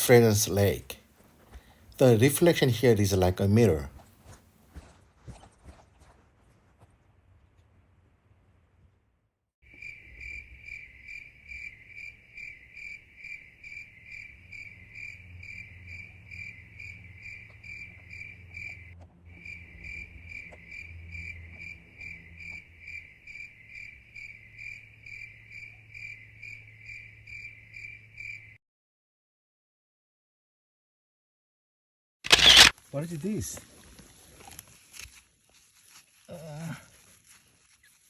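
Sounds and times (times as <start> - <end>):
cricket chirping: 9.6 - 28.6, 32.3 - 35.1.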